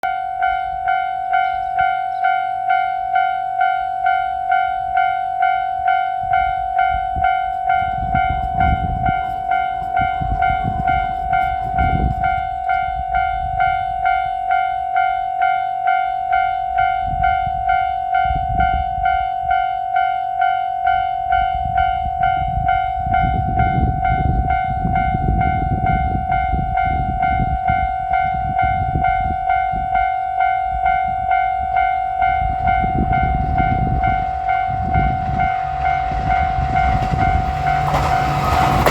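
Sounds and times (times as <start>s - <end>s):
level crossing warning bell: 0.0s - 38.9s
train rumbling over crossing: 0.0s - 38.9s.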